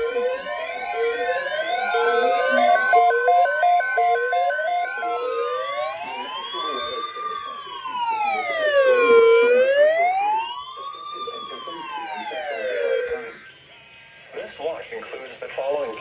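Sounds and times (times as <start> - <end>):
steady alert tone: 0.0 - 6.4
electronic siren wailing: 0.0 - 13.6.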